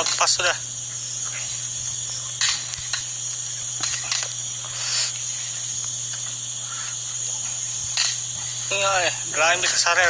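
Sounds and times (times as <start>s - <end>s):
insects chirring: 0.0s - 10.0s.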